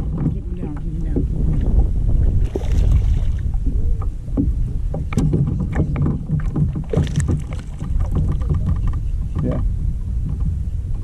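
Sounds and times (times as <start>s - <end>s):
steady low rumble: 0.0s - 11.0s
fish splashing and thrashing: 2.3s - 3.6s, 4.4s - 9.0s
knocks on kayak: 4.3s - 9.6s.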